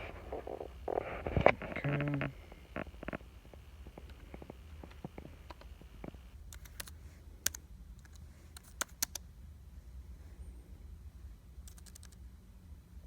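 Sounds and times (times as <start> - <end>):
keyboard key clicks: 6.5 - 9.2.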